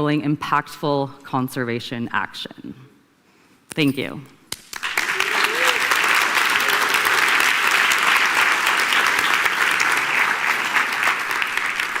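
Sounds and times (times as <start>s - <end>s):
audience applauding: 4.7s - 12.0s.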